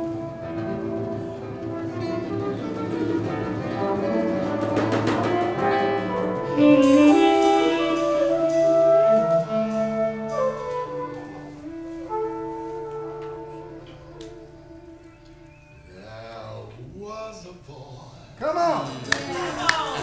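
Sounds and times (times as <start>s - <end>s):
instrumental music with held notes: 0.0s - 16.4s.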